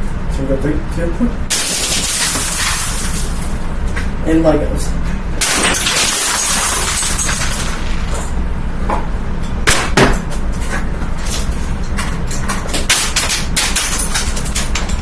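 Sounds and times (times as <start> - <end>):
box fan droning: 0.0 - 15.0
plastic pieces clattering in fan: 1.5 - 4.0, 5.4 - 8.4, 9.7 - 15.0.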